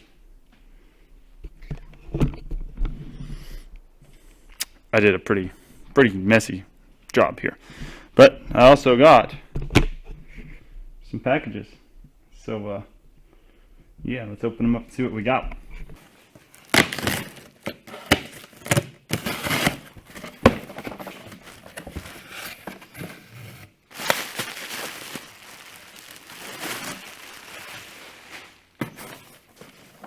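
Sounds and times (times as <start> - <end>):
packaging tearing and crinkling: 16.4 - 30.0.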